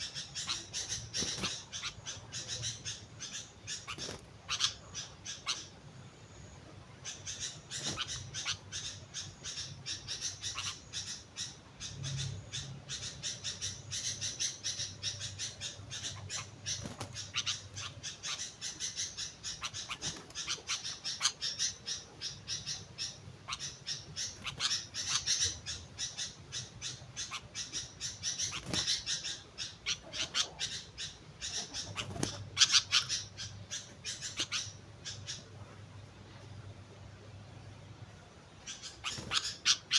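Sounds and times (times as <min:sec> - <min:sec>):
bird chattering call: 0:00.0 - 0:05.8, 0:07.0 - 0:35.5.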